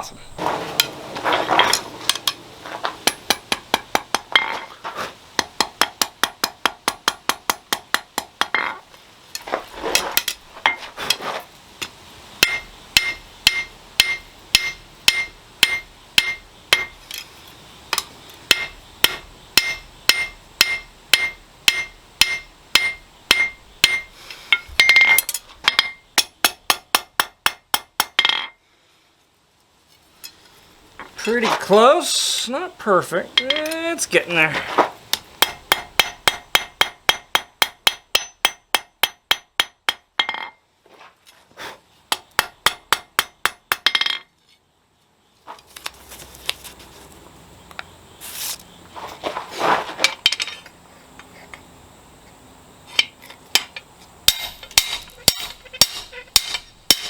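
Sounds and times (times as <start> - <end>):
hammer striking steel on anvil: 12.4 - 17.0, 18.0 - 28.6, 33.4 - 33.8, 35.4 - 40.5, 42.1 - 44.2, 54.3 - 57.0.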